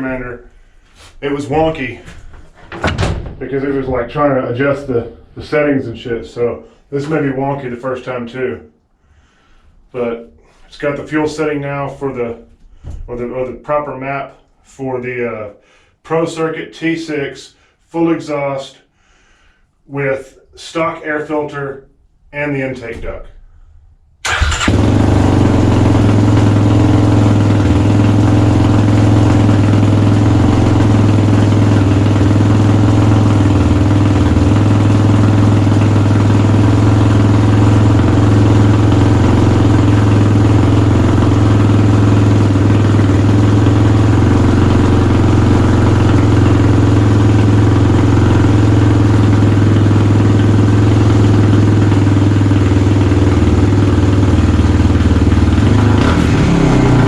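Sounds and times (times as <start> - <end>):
motorcycle engine idling: 24.3 - 57.0.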